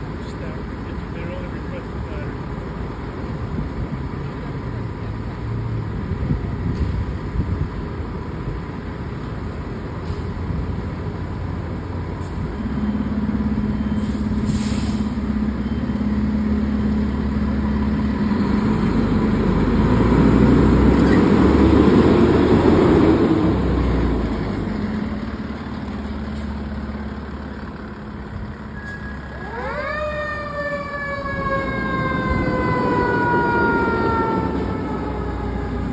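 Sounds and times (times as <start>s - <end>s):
fire truck engine running: 0.0s - 35.9s
brief hiss: 14.0s - 15.2s
siren winding up and falling: 29.2s - 35.8s.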